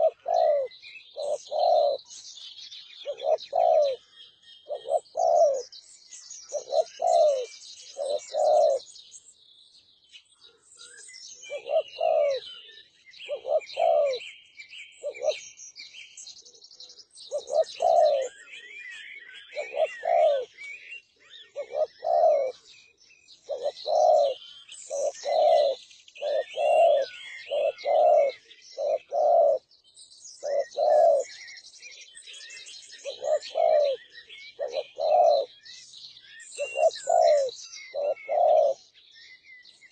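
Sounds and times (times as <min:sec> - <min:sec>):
dove cooing: 0:00.0 - 0:02.1, 0:03.0 - 0:05.7, 0:06.5 - 0:08.9, 0:11.4 - 0:12.6, 0:13.2 - 0:14.3, 0:15.0 - 0:15.4, 0:17.3 - 0:18.6, 0:19.5 - 0:20.7, 0:21.4 - 0:22.6, 0:23.4 - 0:29.7, 0:30.4 - 0:31.4, 0:32.4 - 0:35.6, 0:36.6 - 0:38.9
small birds chirping: 0:00.0 - 0:39.9.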